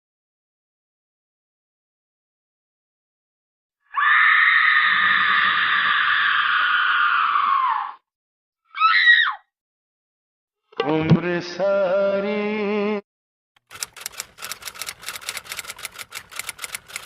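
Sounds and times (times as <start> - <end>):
high-pitched scream: 3.9 - 8.0, 8.7 - 9.5.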